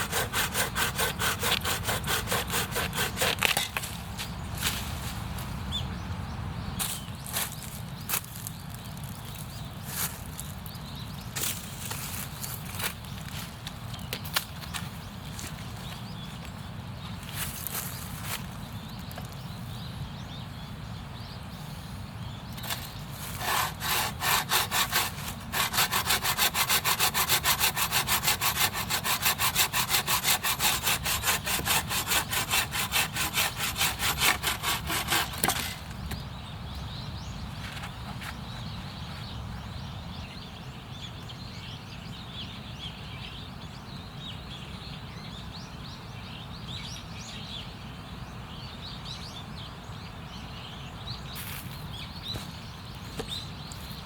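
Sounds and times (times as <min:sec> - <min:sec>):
hand saw cutting wood: 0:00.0 - 0:03.9, 0:22.6 - 0:36.2.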